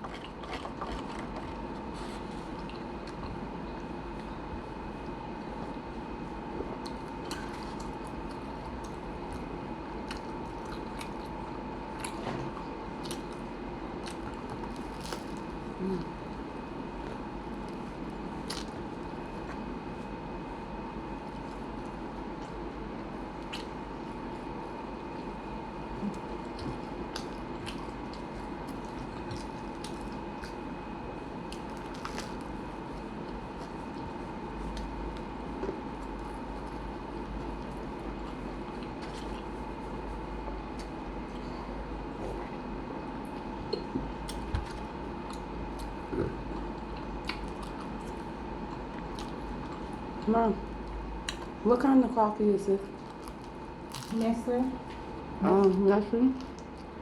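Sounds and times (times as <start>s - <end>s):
chewing clicks and smacks: 0.0s - 1.6s, 23.4s - 23.8s, 26.1s - 30.6s, 43.2s - 51.6s, 56.4s - 57.0s
person chewing a sandwich: 0.0s - 51.6s, 52.9s - 55.8s
steady background hum: 0.0s - 57.0s.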